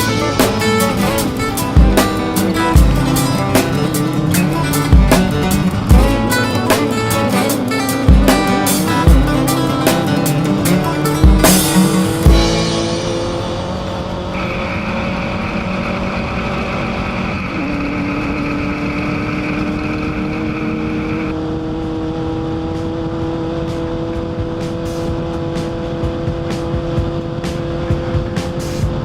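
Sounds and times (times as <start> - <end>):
high whine: 0.0 - 21.4
race vehicle engine under load: 0.0 - 29.0.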